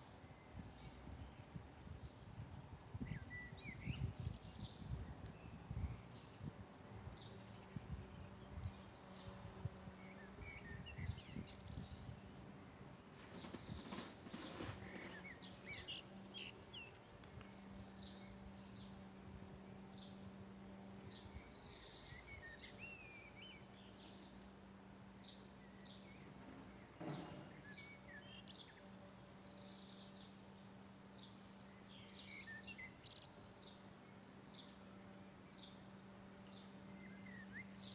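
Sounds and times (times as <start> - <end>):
small birds chirping: 0.0 - 37.9
thump: 27.0 - 27.6.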